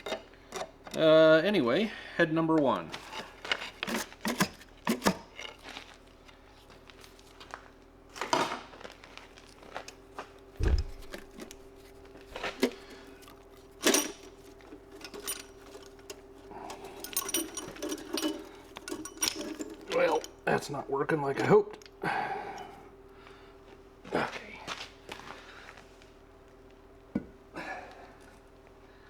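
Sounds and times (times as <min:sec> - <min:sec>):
steady low hum: 0:00.0 - 0:29.0
low thud: 0:10.6 - 0:11.3
hand tools clinking on metal: 0:12.4 - 0:22.0.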